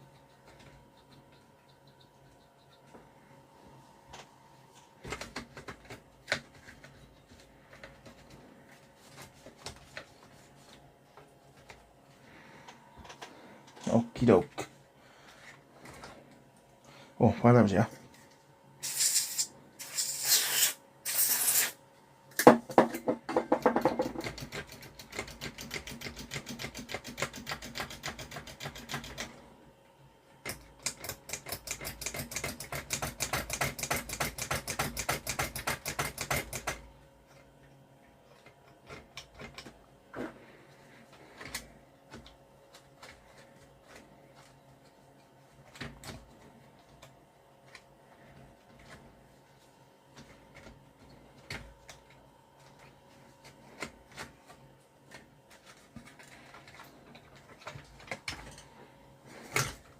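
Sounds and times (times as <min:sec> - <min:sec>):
aerosol spray hissing: 0:18.8 - 0:21.8.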